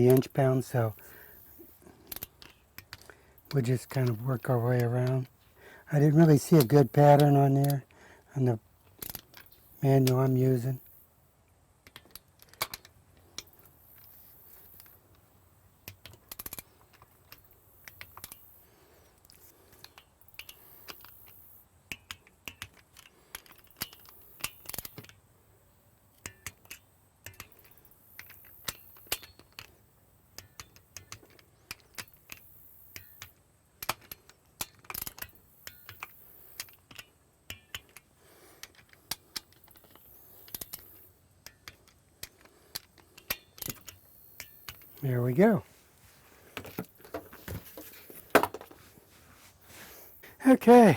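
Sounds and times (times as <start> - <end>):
metal clicks and taps: 11.8 - 14.1, 15.8 - 18.4, 21.9 - 25.2, 26.2 - 29.7, 30.3 - 38.0, 38.6 - 44.9.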